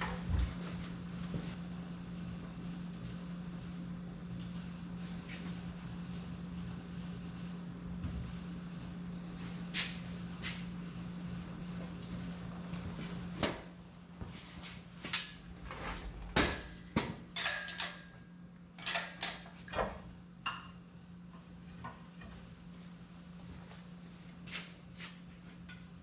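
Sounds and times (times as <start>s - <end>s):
steady low hum: 0.0s - 26.0s
metal tools clinking and clanking: 17.4s - 18.2s, 18.8s - 19.6s.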